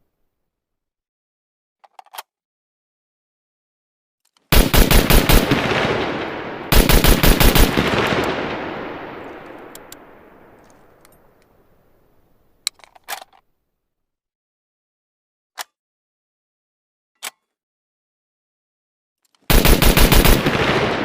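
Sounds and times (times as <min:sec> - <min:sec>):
sniper rifle shots echoing: 0:04.5 - 0:11.4, 0:19.5 - 0:21.0
sharp clicks: 0:09.2 - 0:11.5.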